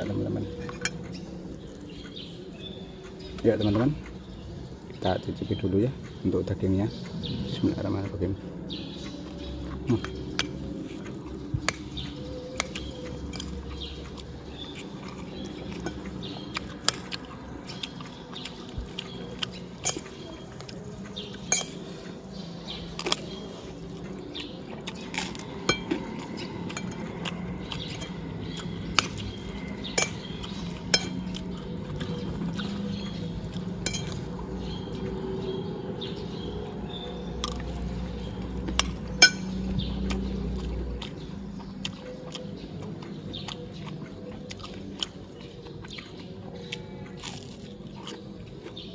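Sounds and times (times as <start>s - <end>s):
low background hum: 0.0s - 48.9s
cutlery clinking on a plate: 33.8s - 34.2s.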